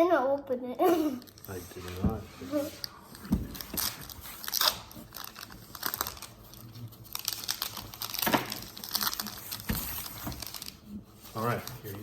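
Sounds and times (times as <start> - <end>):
plastic wrapper crinkling: 2.8 - 12.0.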